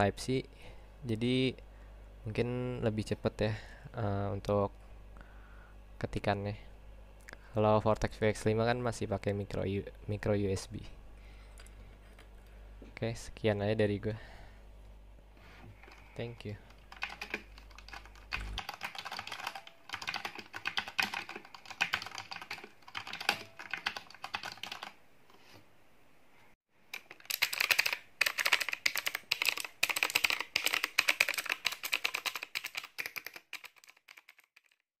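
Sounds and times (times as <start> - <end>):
mechanical keyboard typing: 16.7 - 25.0, 26.9 - 34.8.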